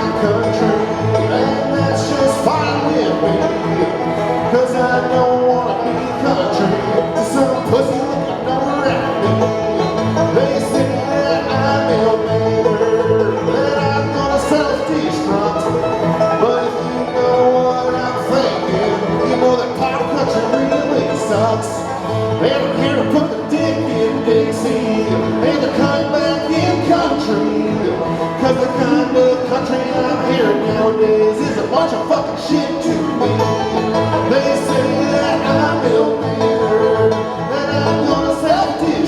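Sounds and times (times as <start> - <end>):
banjo: 0.0 - 39.0
bass line: 0.0 - 39.0
guitar: 0.0 - 39.0.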